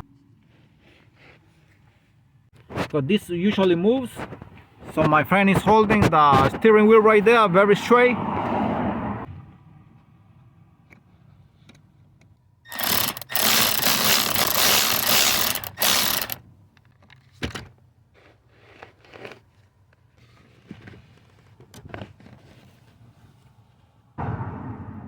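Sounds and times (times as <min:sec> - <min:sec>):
power tool running: 0:12.7 - 0:16.4.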